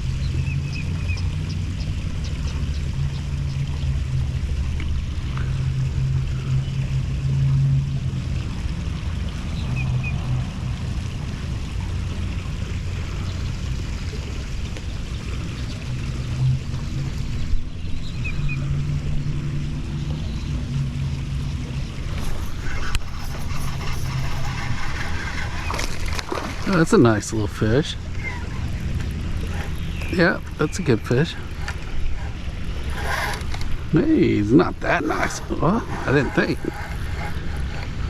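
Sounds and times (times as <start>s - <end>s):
power washer humming: 22.2s - 38.0s.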